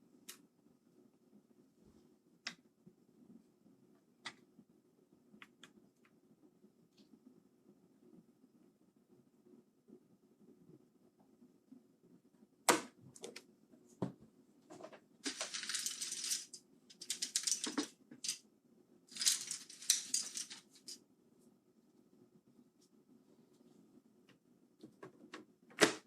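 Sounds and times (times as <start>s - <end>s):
keycaps clicking and clattering: 14.8s - 18.4s, 19.1s - 21.0s.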